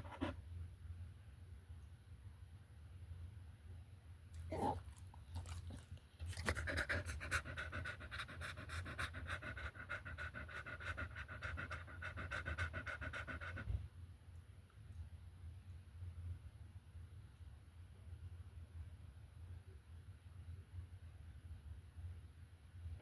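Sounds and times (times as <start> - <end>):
dog panting: 0.0 - 0.4, 4.4 - 13.8.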